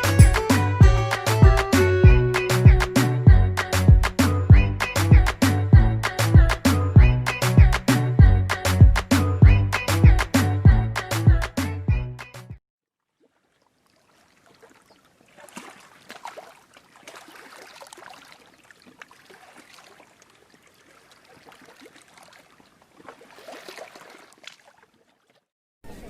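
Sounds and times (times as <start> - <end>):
water lapping and splashing: 13.0 - 26.0.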